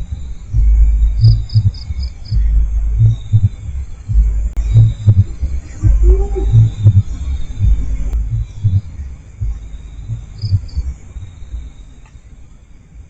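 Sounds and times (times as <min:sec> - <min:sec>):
deep throbbing double-beat pulse: 0:00.0 - 0:12.0
crickets chirping: 0:00.0 - 0:13.0.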